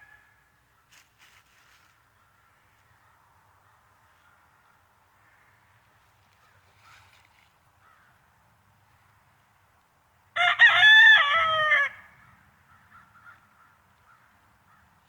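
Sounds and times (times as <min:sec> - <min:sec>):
rooster crowing: 0:10.4 - 0:12.1.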